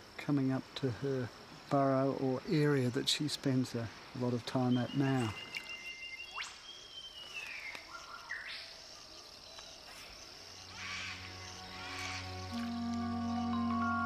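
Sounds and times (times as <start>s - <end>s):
high insect drone: 0.0s - 14.0s
bird calls: 4.3s - 14.0s
soft music with low notes: 10.8s - 14.0s.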